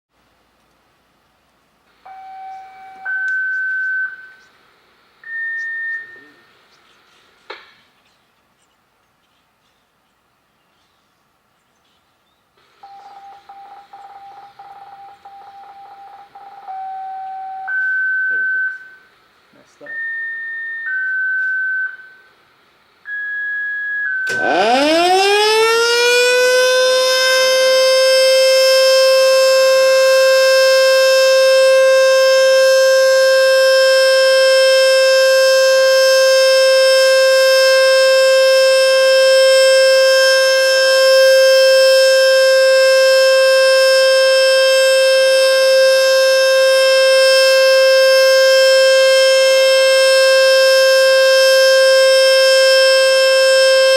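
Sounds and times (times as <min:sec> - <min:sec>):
mechanical warning siren: 0:01.9 - 0:04.5, 0:12.7 - 0:19.1, 0:19.8 - 0:22.3, 0:23.0 - 0:53.9
radio scanner beeps: 0:02.1 - 0:04.5, 0:05.3 - 0:06.4, 0:12.8 - 0:19.1.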